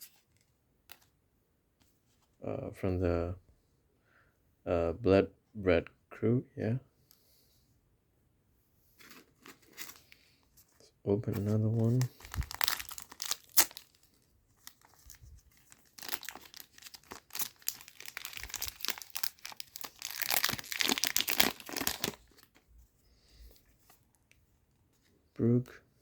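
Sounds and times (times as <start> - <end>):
wrapper tearing and crinkling: 11.8 - 22.6.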